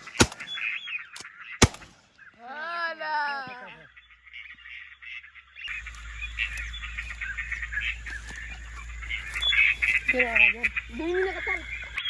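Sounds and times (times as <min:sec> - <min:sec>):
marsh animal calls chorus: 0:00.0 - 0:12.0
steady low hum: 0:05.7 - 0:12.0.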